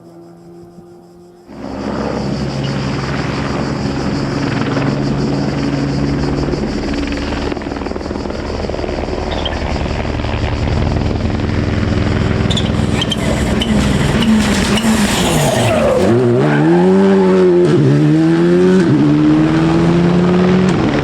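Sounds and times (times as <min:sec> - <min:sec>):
low engine hum: 0:00.0 - 0:16.6
helicopter rotor chopping: 0:01.4 - 0:16.7.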